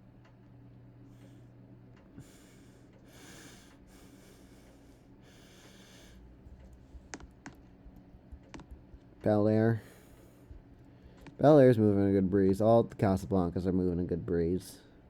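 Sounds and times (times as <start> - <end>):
ceiling fans humming: 0.0 - 15.0
hissing breaths: 1.1 - 7.2, 9.8 - 11.4.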